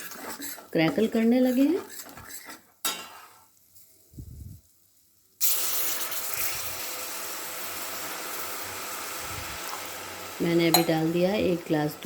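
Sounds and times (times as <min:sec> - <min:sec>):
hot fat hissing: 0:05.4 - 0:10.5.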